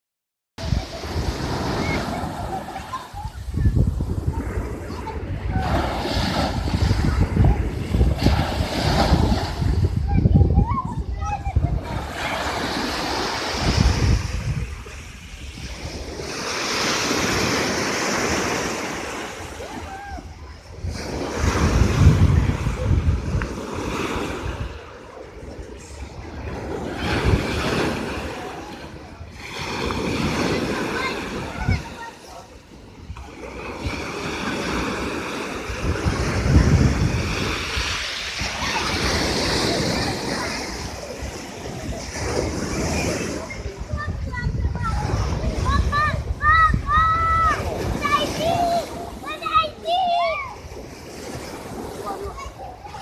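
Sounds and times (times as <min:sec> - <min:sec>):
hissing wash of water: 0:00.6 - 0:04.1, 0:33.8 - 0:53.0
waves breaking on shore: 0:00.6 - 0:53.0
wind buffeting microphone: 0:00.6 - 0:53.0.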